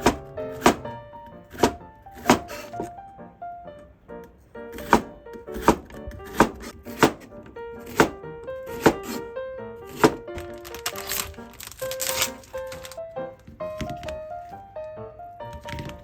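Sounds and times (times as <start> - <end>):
knife chopping on cutting board: 0.0 - 0.9, 1.5 - 2.8, 4.8 - 9.2, 9.9 - 10.2
background music: 0.0 - 16.0.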